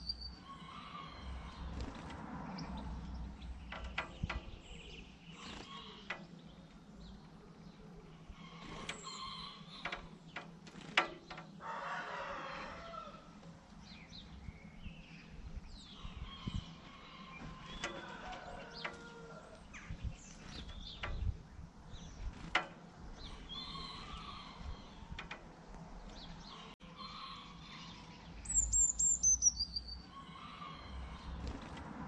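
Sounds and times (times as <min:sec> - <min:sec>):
faint bird chirps: 0:26.5 - 0:31.3.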